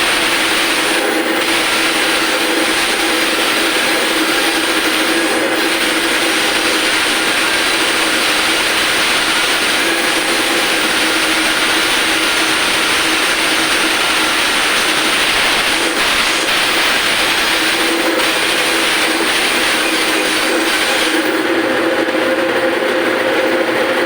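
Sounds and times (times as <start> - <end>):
loud even hiss: 0.0 - 21.5
machine motor hum: 0.0 - 24.0.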